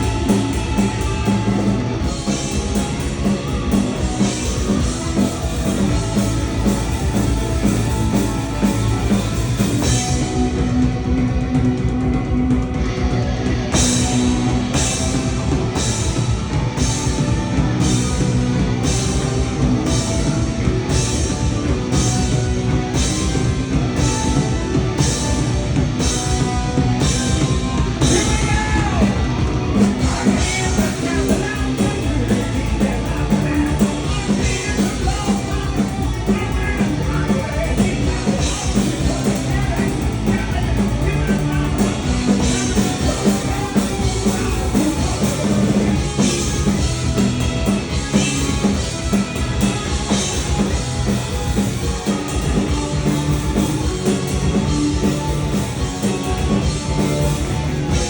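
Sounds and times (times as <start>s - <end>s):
punk rock band playing live: 0.0s - 58.0s
person singing or shouting: 28.0s - 45.9s.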